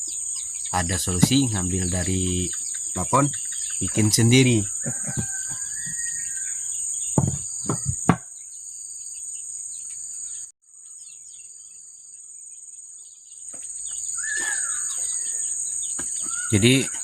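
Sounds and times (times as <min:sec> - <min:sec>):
insects droning: 0:00.0 - 0:17.0
sharp knocks: 0:01.2 - 0:01.6, 0:07.2 - 0:08.3.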